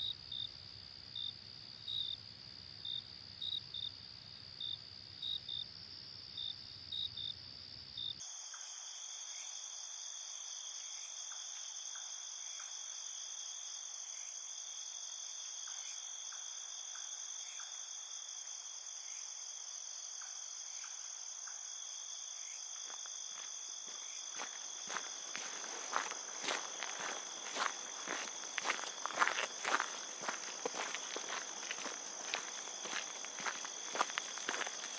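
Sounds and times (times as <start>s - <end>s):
crickets chirping: 0.0s - 34.9s
soft footsteps: 22.9s - 34.9s.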